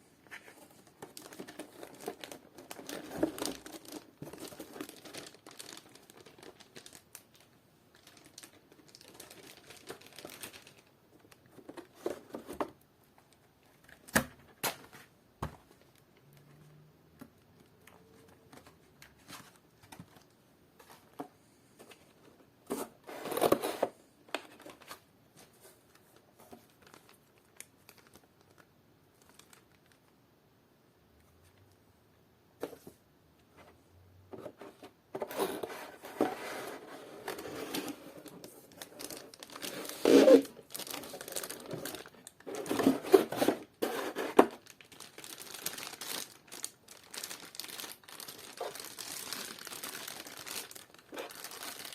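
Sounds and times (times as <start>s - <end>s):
packaging rustling and tearing: 0.3s - 12.8s, 22.7s - 25.0s, 25.6s - 28.6s, 34.5s - 51.9s.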